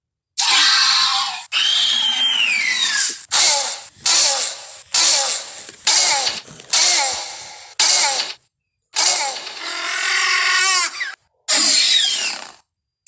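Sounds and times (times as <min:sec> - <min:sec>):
dinosaur screeching shrieks: 0:00.4 - 0:03.5, 0:09.0 - 0:12.7.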